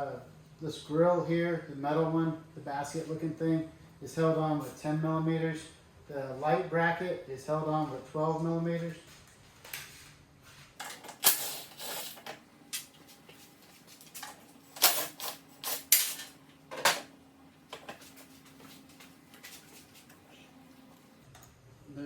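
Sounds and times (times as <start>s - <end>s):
metal parts clanking: 14.2s - 17.1s.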